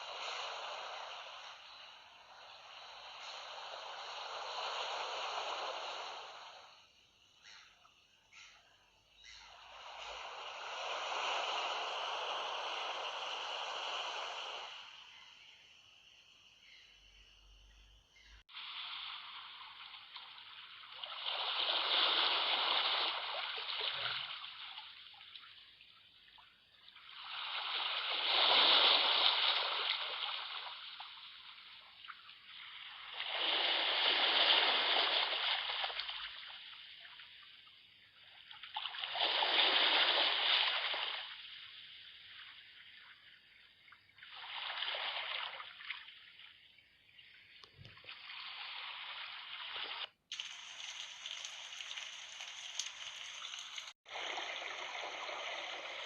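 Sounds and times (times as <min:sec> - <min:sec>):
sea waves washing in: 0:00.0 - 0:07.3, 0:09.5 - 0:15.2, 0:18.5 - 0:25.8, 0:26.9 - 0:37.1, 0:38.9 - 0:43.0, 0:48.0 - 0:56.0.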